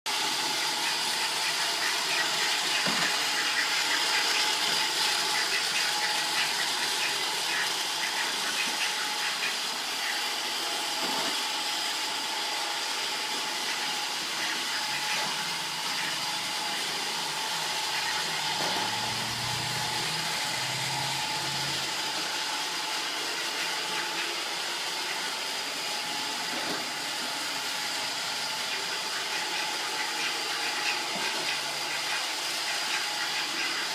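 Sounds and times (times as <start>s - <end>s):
robot vacuum whirring: 0.1s - 33.9s
thin high whine: 12.9s - 33.9s.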